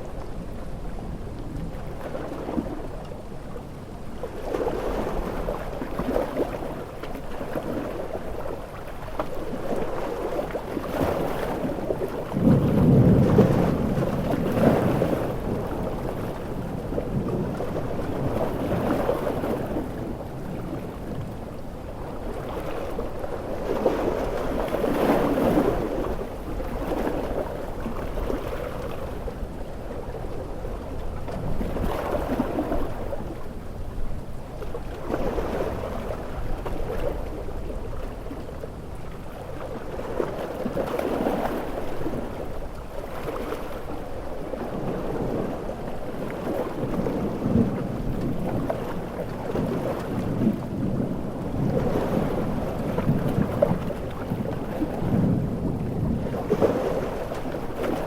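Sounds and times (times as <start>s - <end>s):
ocean waves breaking: 0.0s - 58.0s
heavy rain: 12.4s - 18.6s.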